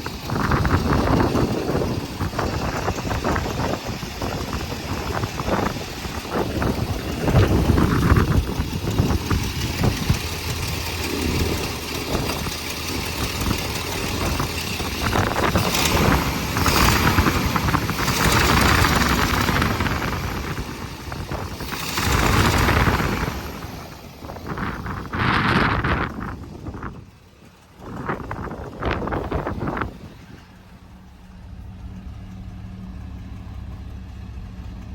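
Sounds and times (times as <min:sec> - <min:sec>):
petrol engine running: 0:00.0 - 0:34.9.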